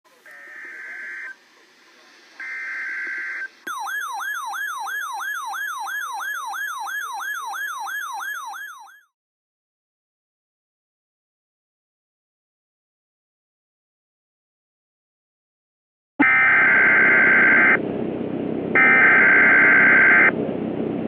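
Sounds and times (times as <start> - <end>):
siren-like attention tone: 0.3 - 1.4, 2.4 - 9.1, 16.2 - 17.8, 18.8 - 20.4
screeching digital data tones: 2.4 - 9.0.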